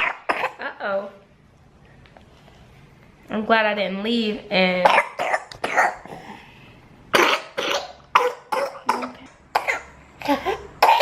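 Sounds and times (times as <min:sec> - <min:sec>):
toddler coughing: 0:00.0 - 0:00.6, 0:04.8 - 0:06.2, 0:07.1 - 0:11.0.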